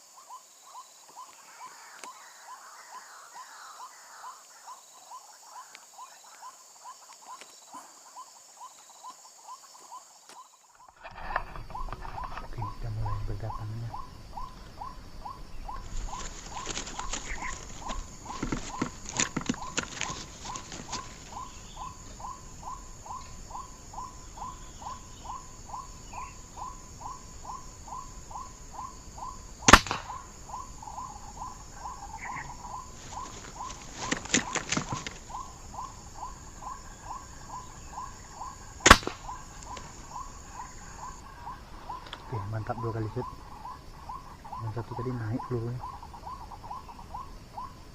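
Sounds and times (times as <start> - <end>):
air rifle shots: 29.7 - 30.2, 38.8 - 39.4.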